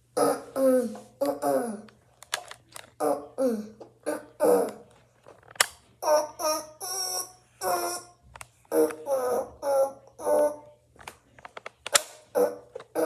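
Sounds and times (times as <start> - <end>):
voice making wordless sounds: 0.2 - 2.0, 3.0 - 4.9, 6.0 - 10.8, 12.3 - 13.0.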